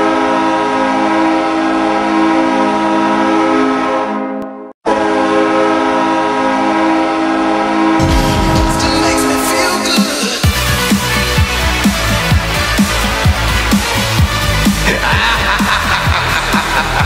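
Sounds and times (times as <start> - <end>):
goal horn blaring: 0.0 - 12.0.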